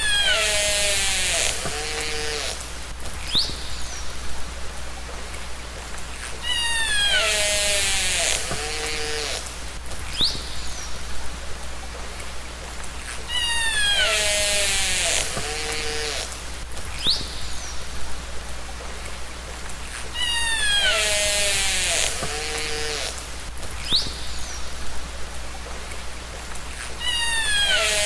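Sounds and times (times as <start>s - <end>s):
water noise hiss: 0.0s - 28.0s
orca whistled calls: 6.3s - 9.4s, 13.2s - 16.3s, 20.1s - 23.2s, 27.0s - 28.0s.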